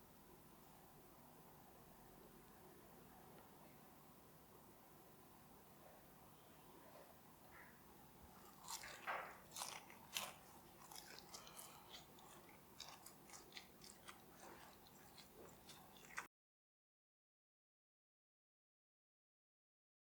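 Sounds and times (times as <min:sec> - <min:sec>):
chewing crunches: 0:08.3 - 0:16.3
crunching fried chicken: 0:08.3 - 0:16.3.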